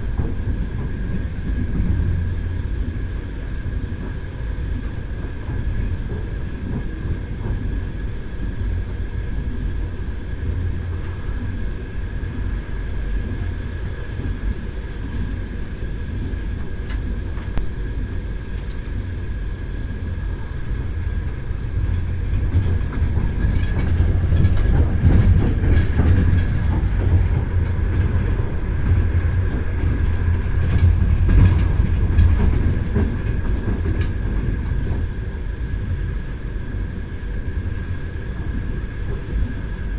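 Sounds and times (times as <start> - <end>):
train rumbling: 0.0 - 39.9
wheels clattering over rails: 19.9 - 39.9.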